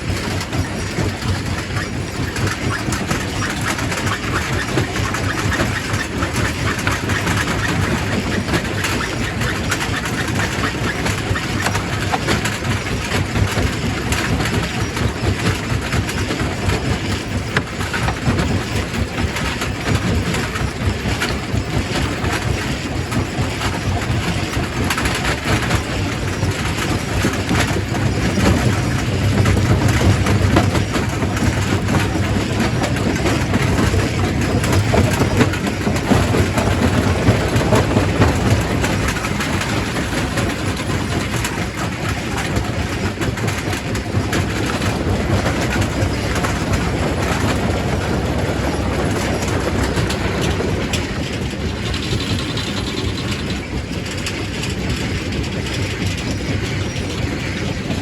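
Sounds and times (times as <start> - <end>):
rock crusher rumble: 23.8 - 54.8.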